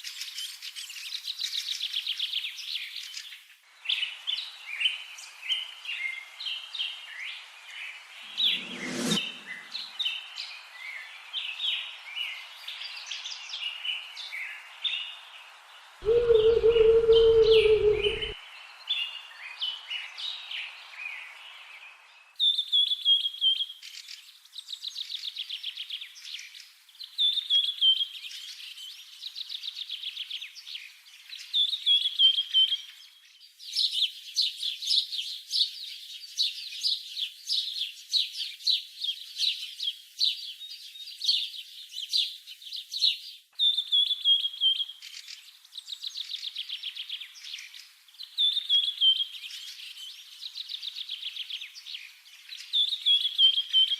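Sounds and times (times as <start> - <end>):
songbird singing trills: 16.0 - 18.4, 43.1 - 53.9.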